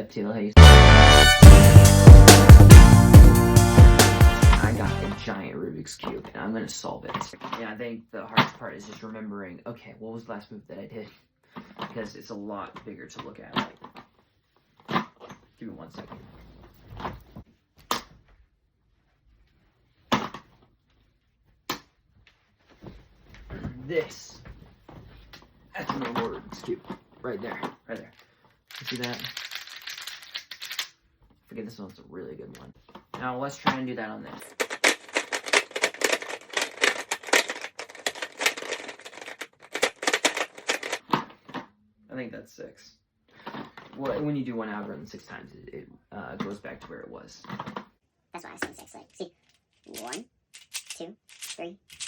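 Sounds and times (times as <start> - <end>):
plastic puzzle cube clicking: 28.7 - 30.9, 34.4 - 41.0, 50.0 - 52.0.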